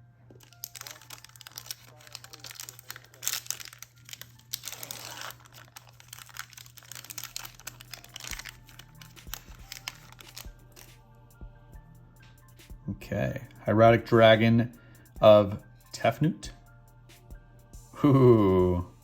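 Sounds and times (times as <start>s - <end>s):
foil wrapper crinkling: 0.4s - 11.0s.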